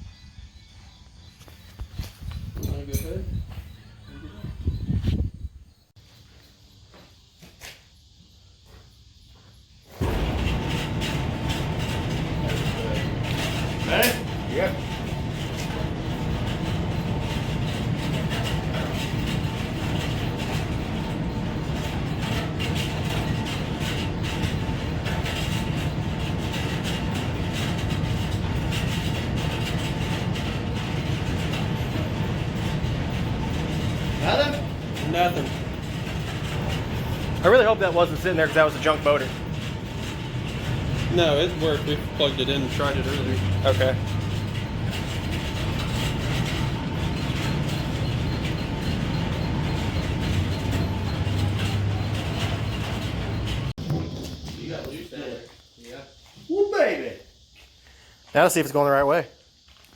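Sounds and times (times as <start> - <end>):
machinery rumbling: 9.9 - 57.3.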